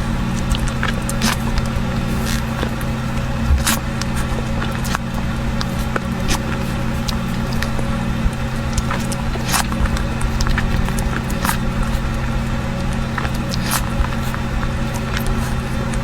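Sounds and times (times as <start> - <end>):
eating clicks and smacks: 0.0 - 16.0
low hum: 0.0 - 16.0.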